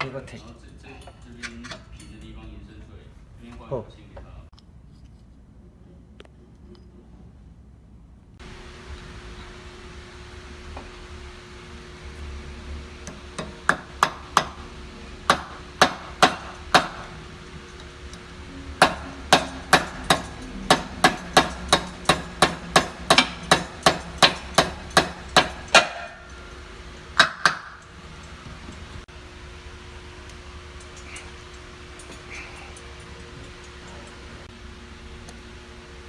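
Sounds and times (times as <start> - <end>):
hammer blows: 18.6 - 26.3.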